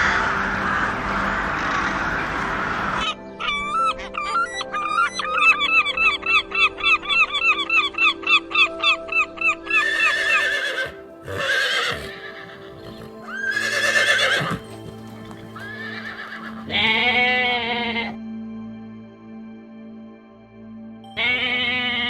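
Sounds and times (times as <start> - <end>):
background music: 0.0 - 22.0
horse whinnying: 9.7 - 18.2, 21.2 - 22.0
goose honking: 11.5 - 18.2.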